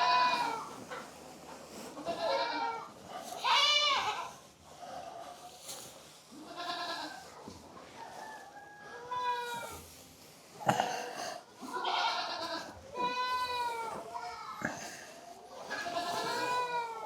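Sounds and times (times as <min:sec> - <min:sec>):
goats bleating: 0:00.0 - 0:00.7, 0:02.0 - 0:04.4, 0:06.3 - 0:07.2, 0:10.7 - 0:17.0.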